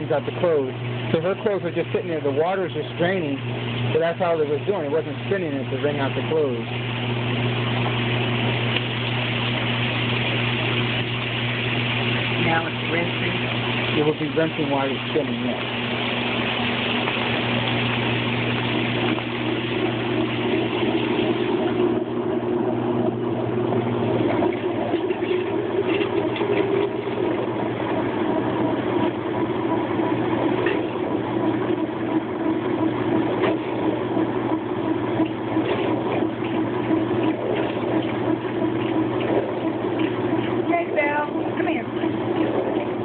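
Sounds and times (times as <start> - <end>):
water spraying: 0.0 - 22.0
washing machine drum spinning: 0.0 - 43.0.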